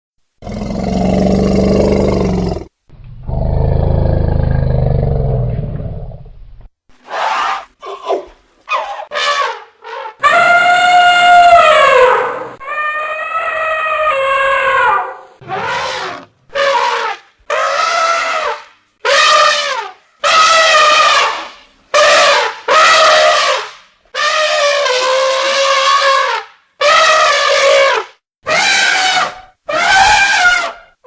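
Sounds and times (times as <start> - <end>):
elephant trumpeting: 7.0 - 31.0.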